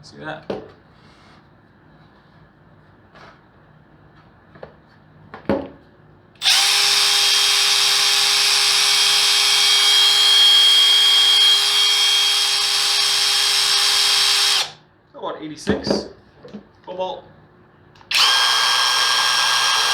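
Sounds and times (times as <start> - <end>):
impact wrench whining: 6.4 - 14.8, 18.1 - 19.9.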